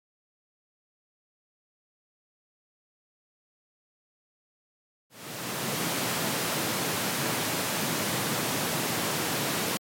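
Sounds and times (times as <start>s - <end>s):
pink noise test hiss: 5.2s - 9.8s.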